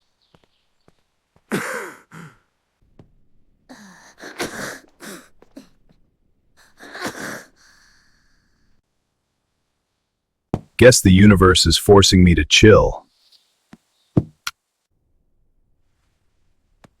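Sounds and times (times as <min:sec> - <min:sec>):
person coughing hoarsely: 0:01.5 - 0:02.4, 0:06.8 - 0:07.5.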